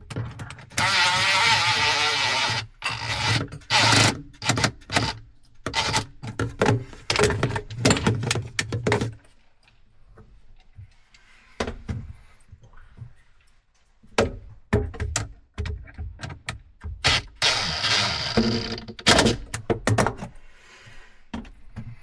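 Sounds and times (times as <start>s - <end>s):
knocks and clatters of tools: 0.0s - 9.3s, 14.1s - 20.4s
harsh noisy burst: 0.8s - 5.2s, 17.0s - 18.8s.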